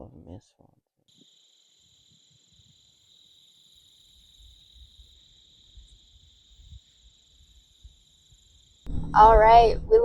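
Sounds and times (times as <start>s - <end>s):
insects trilling: 1.1s - 8.9s
uneven low rumble: 8.9s - 10.0s.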